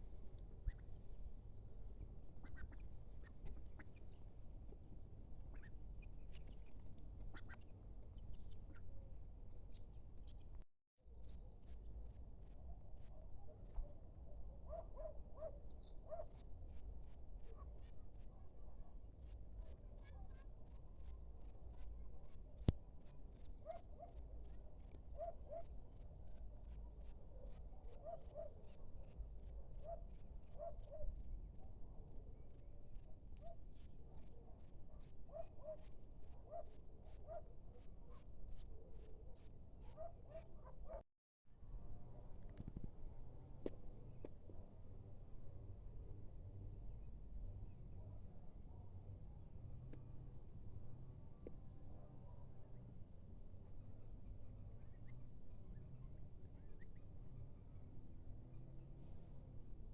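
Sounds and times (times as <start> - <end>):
cricket chirping: 11.2 - 13.8, 16.3 - 18.3, 19.2 - 31.4, 32.1 - 40.5.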